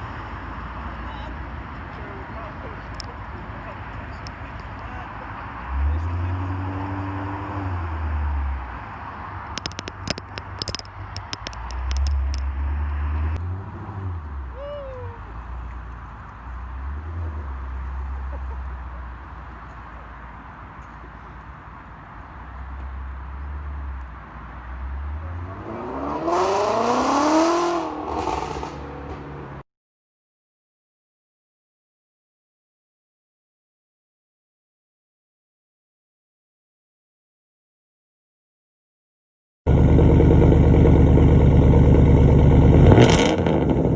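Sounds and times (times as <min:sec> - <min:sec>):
engine deep rumble: 0:00.0 - 0:29.6, 0:39.7 - 0:43.9
exhaust sharp crackles: 0:09.5 - 0:12.6, 0:26.5 - 0:29.4, 0:39.7 - 0:43.9.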